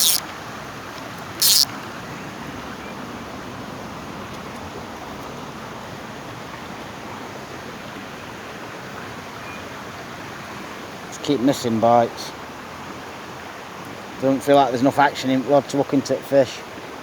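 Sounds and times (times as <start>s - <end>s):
short sharp hissing rustle: 0.0s - 0.2s, 1.4s - 1.7s.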